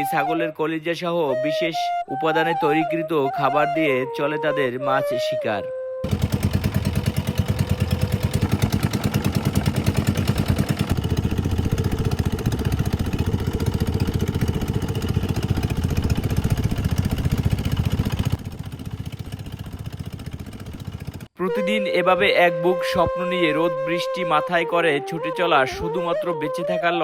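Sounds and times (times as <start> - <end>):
boat engine chugging: 6.0 - 21.4.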